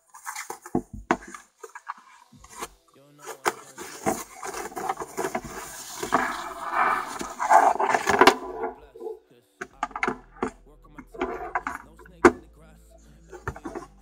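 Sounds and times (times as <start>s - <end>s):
packaging rustling: 0.0s - 8.8s
knocks and clicks of handling: 0.2s - 2.7s, 3.3s - 12.4s, 13.4s - 13.9s.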